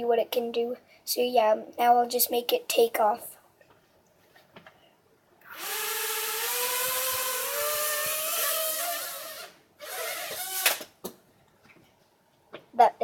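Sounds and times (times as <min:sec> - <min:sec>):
toy drone motors whining: 0:05.5 - 0:10.8.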